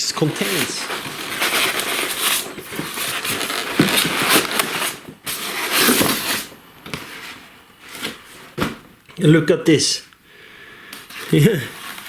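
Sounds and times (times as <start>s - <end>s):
cardboard box scraping and rustling: 0.2s - 8.8s.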